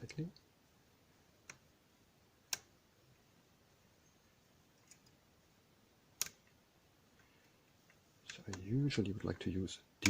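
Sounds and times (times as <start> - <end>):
sharp metallic clicks: 2.5 - 2.7, 6.2 - 6.5.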